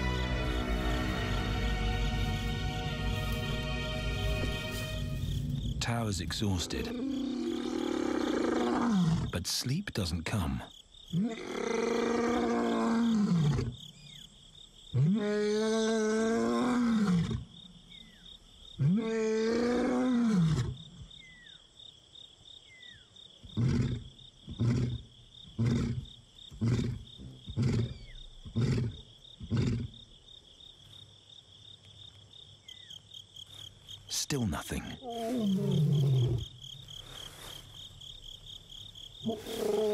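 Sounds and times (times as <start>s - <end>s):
pulsing insect chorus: 0.0s - 39.9s
lion roaring and grunting: 6.8s - 9.4s, 15.0s - 17.4s, 18.8s - 20.8s, 23.5s - 25.0s, 25.6s - 30.0s, 35.0s - 36.6s, 39.2s - 39.9s.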